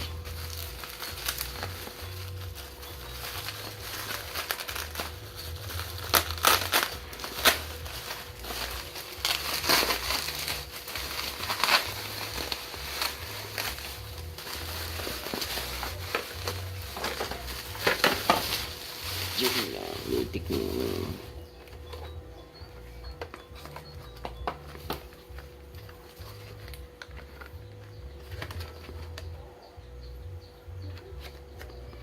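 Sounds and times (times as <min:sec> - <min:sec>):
plastic wrap crinkling: 0:00.0 - 0:29.5.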